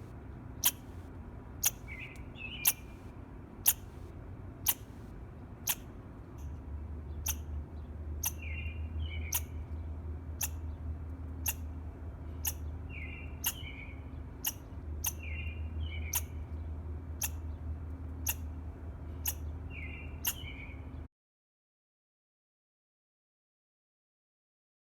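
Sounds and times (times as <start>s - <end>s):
squirrel chirping: 0.6s - 1.0s, 1.6s - 3.0s, 3.6s - 4.0s, 4.6s - 5.0s, 5.6s - 7.6s, 8.2s - 9.8s, 10.4s - 10.8s, 11.4s - 21.0s.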